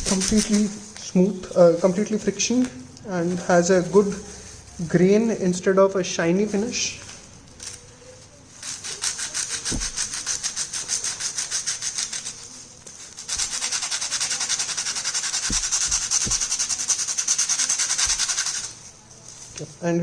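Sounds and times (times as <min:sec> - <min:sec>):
brake pad rubbing on sandpaper: 0:08.6 - 0:18.9.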